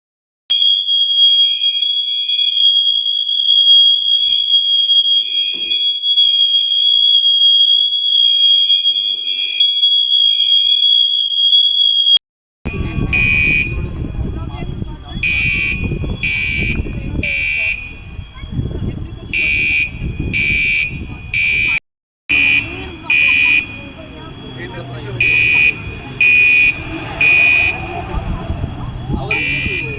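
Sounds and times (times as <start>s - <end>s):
fire alarm continuous tone: 0.5s - 29.9s
alarm short blasts: 9.3s - 14.0s, 15.2s - 18.3s, 19.4s - 29.9s
loud low rumble: 25.3s - 29.9s.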